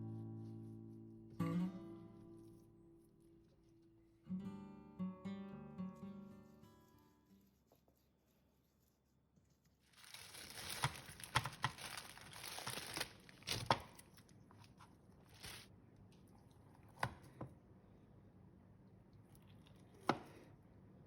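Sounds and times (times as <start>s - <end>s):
crinkling and tearing: 9.8s - 15.7s.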